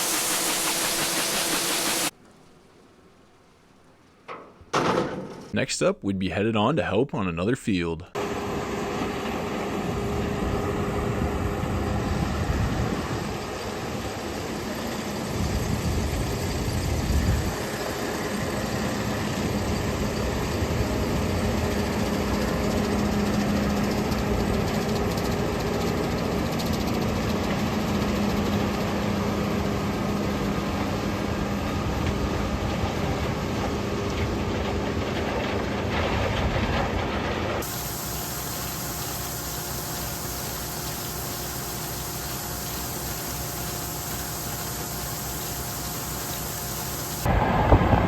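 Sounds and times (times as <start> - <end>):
farm machinery engine running: 0.0 - 2.1, 8.2 - 47.8.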